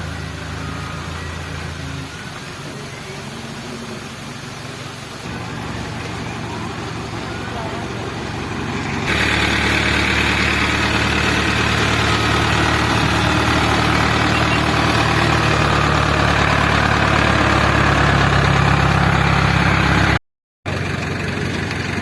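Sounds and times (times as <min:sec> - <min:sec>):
heavy diesel engine running: 0:00.0 - 0:22.0.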